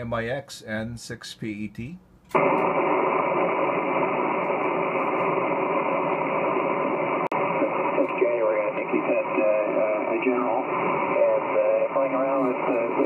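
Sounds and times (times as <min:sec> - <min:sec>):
radio receiver hiss: 0:02.3 - 0:13.0.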